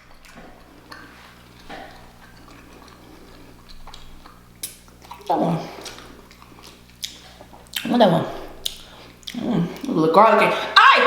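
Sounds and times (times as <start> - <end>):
person chewing: 0.0 - 10.8
small wet clicks: 0.1 - 10.0.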